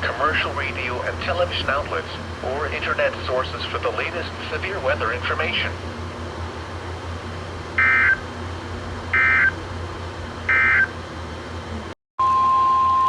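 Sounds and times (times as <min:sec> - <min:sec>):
low radio hum: 0:00.0 - 0:12.0.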